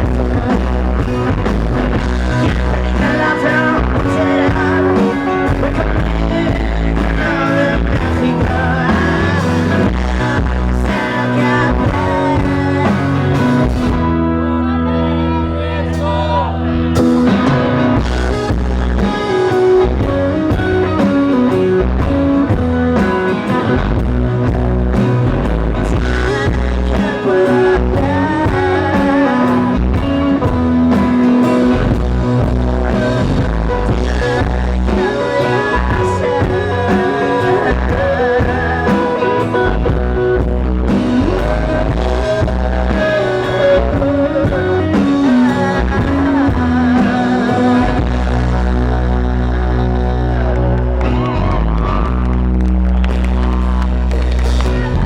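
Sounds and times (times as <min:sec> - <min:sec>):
drums: 0:00.0 - 0:15.0, 0:15.8 - 0:55.0
wavering singing voice: 0:00.0 - 0:15.1, 0:25.8 - 0:52.2
bass guitar: 0:00.0 - 0:55.0
electric guitar: 0:00.0 - 0:55.0.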